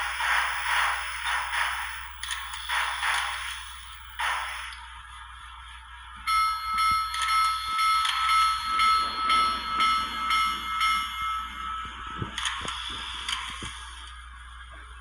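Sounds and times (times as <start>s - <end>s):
locomotive bell ringing: 6.3s - 12.6s.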